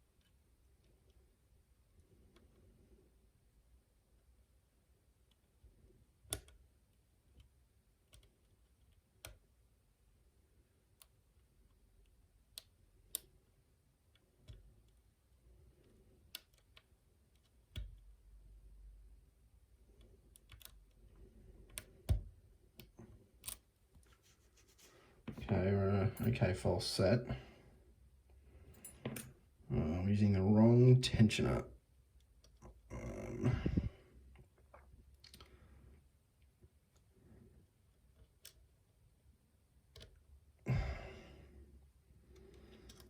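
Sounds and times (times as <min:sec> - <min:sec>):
lock pick clicking: 0:06.2 - 0:06.7, 0:07.4 - 0:09.5, 0:20.0 - 0:21.0, 0:21.6 - 0:23.6, 0:38.2 - 0:38.7, 0:39.9 - 0:40.2, 0:42.4 - 0:43.0.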